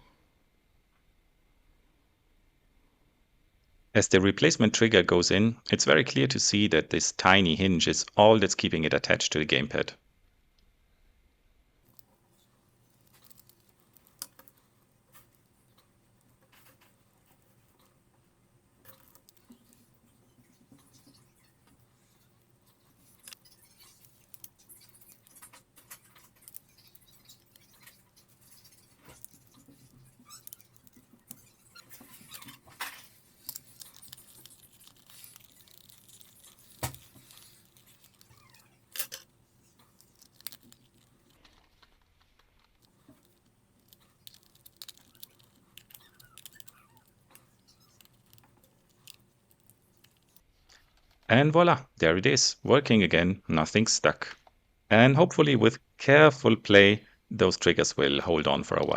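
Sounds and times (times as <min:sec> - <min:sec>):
small plastic clicks and scrapes: 0:11.9 - 0:51.3.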